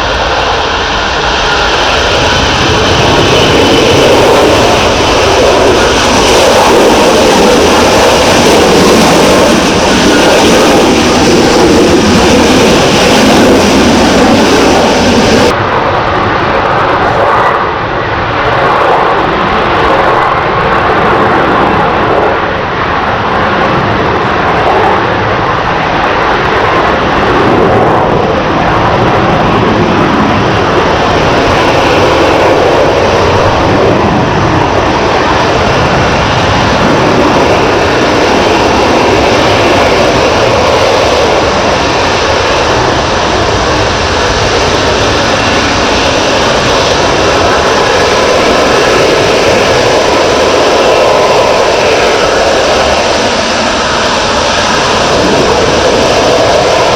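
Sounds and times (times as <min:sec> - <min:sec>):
jet engine roar: 0:00.0 - 0:56.9.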